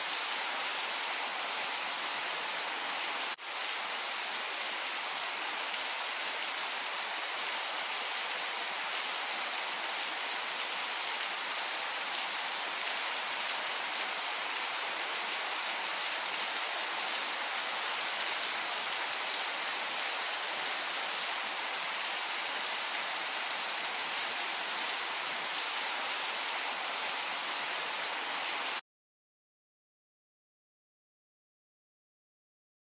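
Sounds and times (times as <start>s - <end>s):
steady rain hiss: 0.0s - 28.8s.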